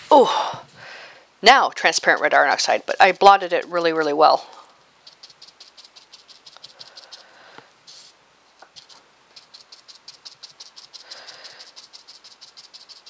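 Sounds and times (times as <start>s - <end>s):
brush tapping paint on card: 5.0s - 7.2s, 7.9s - 13.0s.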